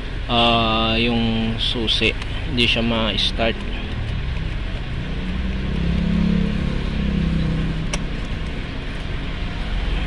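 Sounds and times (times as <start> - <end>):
vehicle engine and traffic: 0.0 - 10.0
low hum: 2.3 - 10.0.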